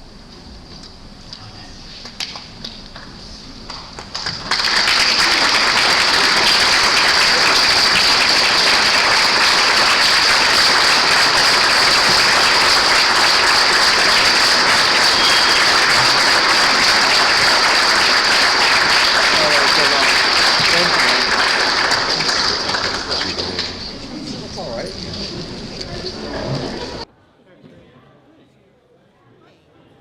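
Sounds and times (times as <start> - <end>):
congregation applauding: 3.7 - 24.1.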